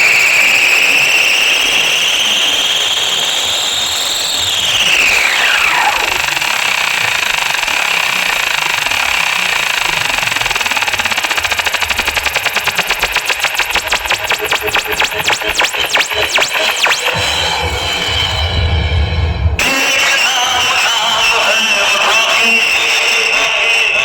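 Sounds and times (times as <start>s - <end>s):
rapid stuttering pulse: 3.9s - 22.3s
whistle-like swooping tone: 12.6s - 18.7s.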